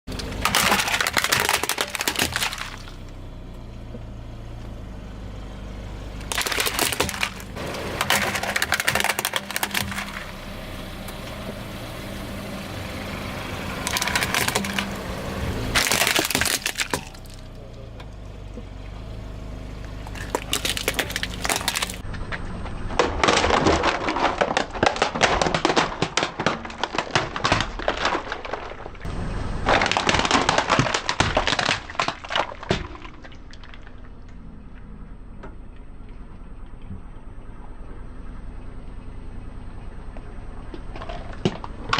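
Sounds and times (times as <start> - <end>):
tyres crushing brittle objects: 0.0 - 3.2, 6.2 - 11.2, 13.2 - 17.6, 19.9 - 34.4.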